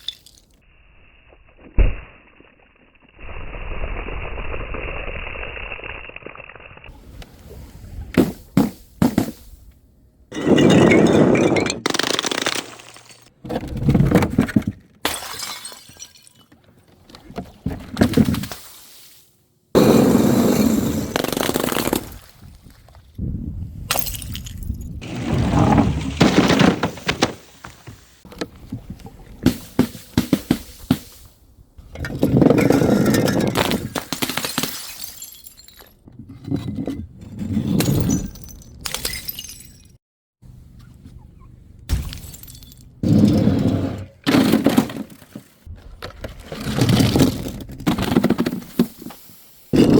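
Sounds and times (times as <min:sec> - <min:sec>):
glass shattering: 0:00.0 - 0:00.5, 0:15.0 - 0:16.5, 0:33.4 - 0:36.0, 0:37.9 - 0:40.0, 0:41.9 - 0:42.9
glass bottles smashing: 0:00.0 - 0:00.6, 0:10.3 - 0:13.3, 0:15.0 - 0:16.5, 0:23.9 - 0:24.8, 0:32.9 - 0:36.0, 0:37.8 - 0:40.0, 0:41.9 - 0:43.0.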